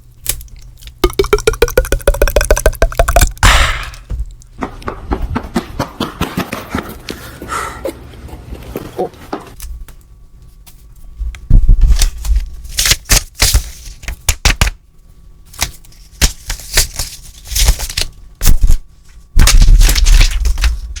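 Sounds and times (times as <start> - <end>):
beatboxing percussive mouth sounds: 1.0 - 3.5.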